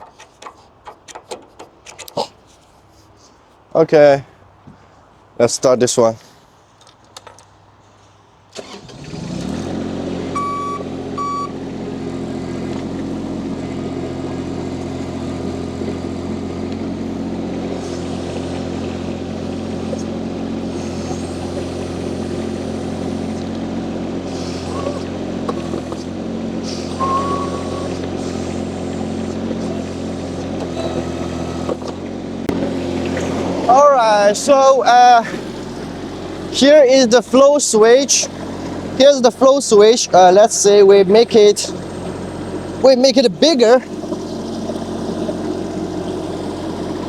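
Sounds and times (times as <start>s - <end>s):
loader engine starting and running: 0.0s - 3.2s, 6.7s - 47.0s
short high beeps: 10.4s - 11.5s, 27.0s - 27.9s.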